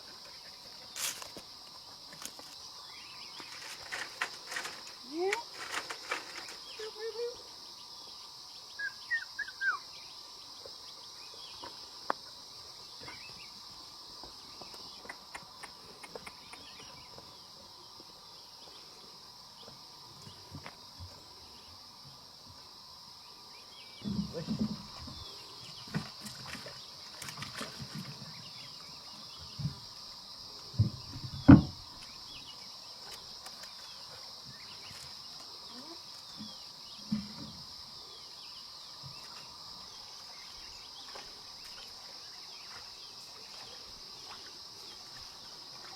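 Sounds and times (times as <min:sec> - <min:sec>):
insects droning: 0:00.0 - 0:45.9
dull knocks: 0:30.8 - 0:31.8.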